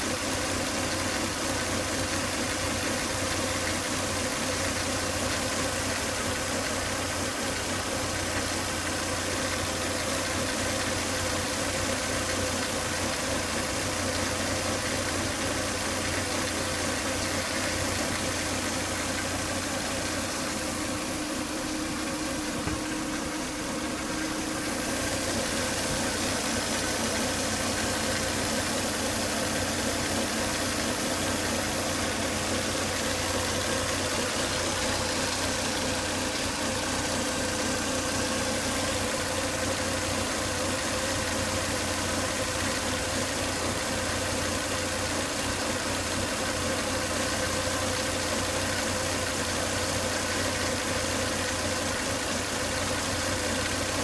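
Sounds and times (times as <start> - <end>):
car engine idling: 0.0 - 54.0.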